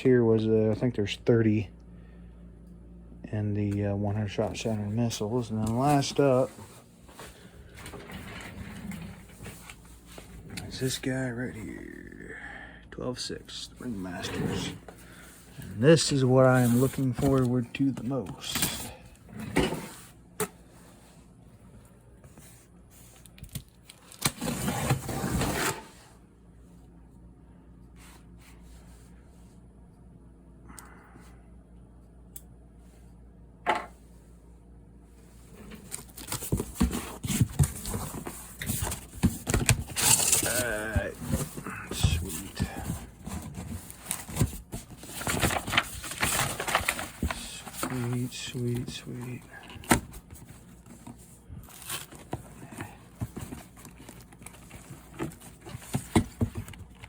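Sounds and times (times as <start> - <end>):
cardboard rustling and scraping: 4.5 - 11.3, 13.8 - 20.2, 23.9 - 26.1, 35.2 - 57.0
cardboard tearing: 35.9 - 48.2.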